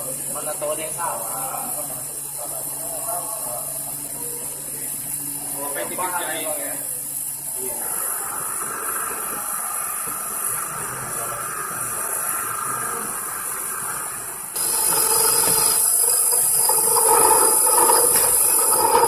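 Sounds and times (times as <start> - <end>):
high-pitched hiss with whine: 0.0 - 19.0
lathe mechanical hiss: 0.0 - 19.0.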